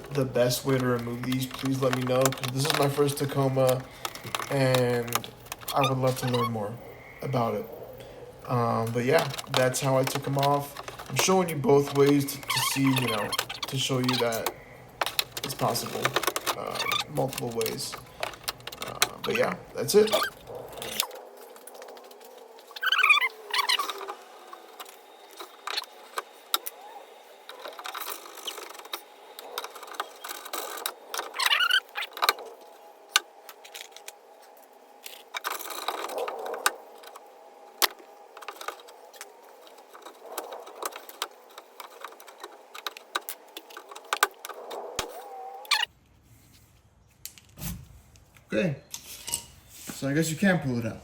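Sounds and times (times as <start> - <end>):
hand tools clicking: 0.0 - 6.5, 8.0 - 22.0
plastic clips squeaking: 0.0 - 45.9
faint steady hum: 0.0 - 51.0.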